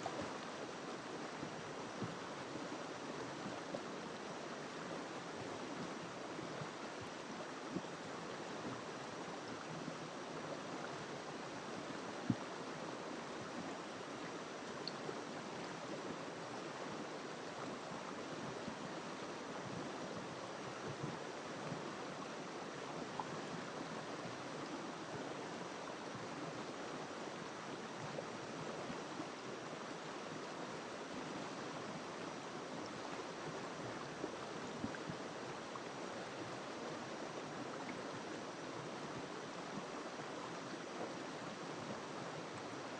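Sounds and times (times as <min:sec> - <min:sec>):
river water flowing over rocks: 0:00.0 - 0:42.9
faint ticks: 0:14.6 - 0:15.2.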